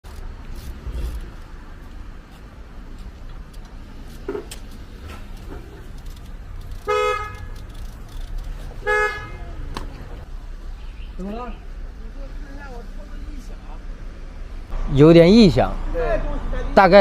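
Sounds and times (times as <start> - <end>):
car engine rumble: 0.0 - 15.0
car horn toot: 6.8 - 7.6, 8.8 - 9.5.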